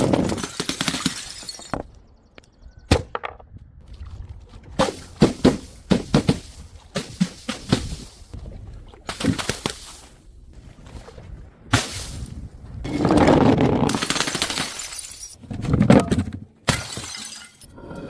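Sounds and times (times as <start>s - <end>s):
glass shattering: 0.2s - 1.8s, 14.4s - 15.4s, 16.7s - 17.7s.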